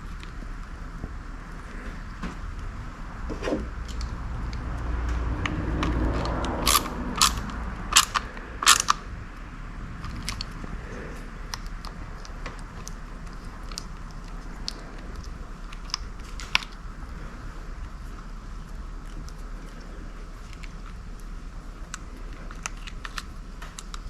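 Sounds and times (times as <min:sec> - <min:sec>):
low rumble: 0:00.0 - 0:24.0
loud sharp clicks: 0:03.8 - 0:09.2.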